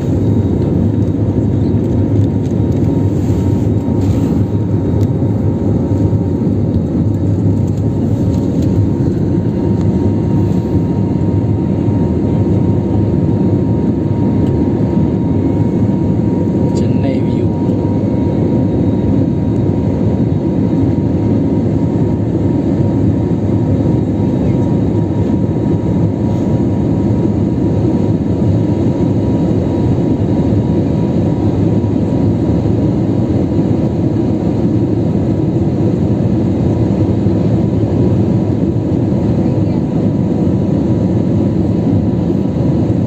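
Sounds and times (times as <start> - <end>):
jet engine cabin rumble: 0.0 - 43.0.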